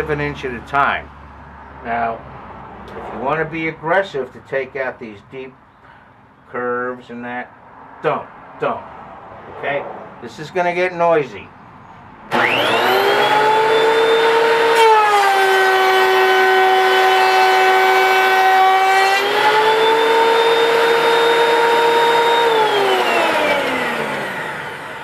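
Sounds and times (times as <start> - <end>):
thickness planer motor whine: 12.3 - 25.0.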